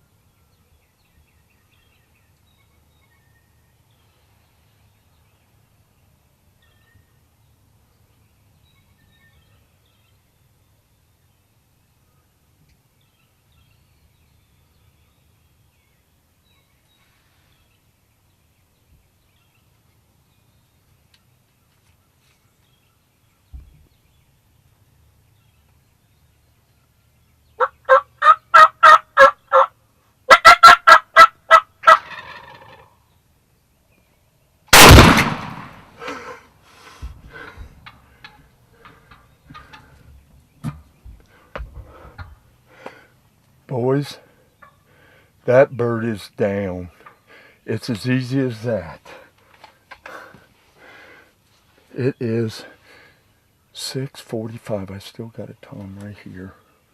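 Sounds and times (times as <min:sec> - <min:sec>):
faint rustles: 0:16.7 - 0:17.9, 0:20.8 - 0:24.2, 0:49.0 - 0:53.5
turkey calls rattling: 0:27.6 - 0:33.1, 0:36.0 - 0:41.0, 0:41.8 - 0:43.0, 0:43.8 - 0:45.2
shotgun blast: 0:34.7 - 0:36.0.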